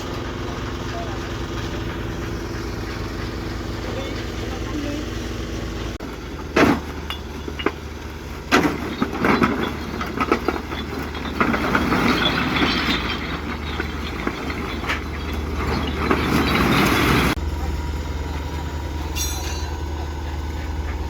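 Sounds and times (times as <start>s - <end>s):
heavy engine humming: 0.0s - 21.0s
clattering rattle: 6.0s - 17.4s
sharp metallic knocks and clanks: 19.1s - 20.1s.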